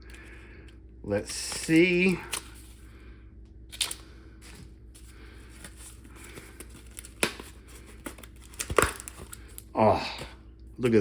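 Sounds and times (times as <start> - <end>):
wrapping crinkling: 3.7 - 9.8
package being torn open: 5.6 - 9.7.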